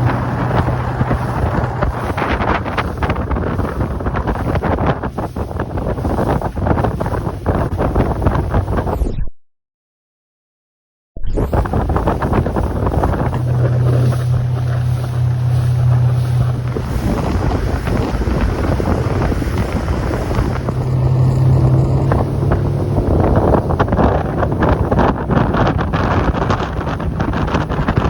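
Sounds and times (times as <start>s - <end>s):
boat engine humming: 0.0s - 7.3s, 11.5s - 28.0s
wind buffeting microphone: 0.0s - 9.0s, 11.4s - 28.0s.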